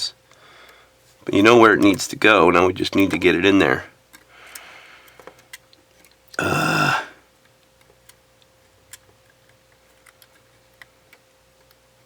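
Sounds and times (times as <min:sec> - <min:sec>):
man's wordless vocal sound: 0:06.4 - 0:07.2.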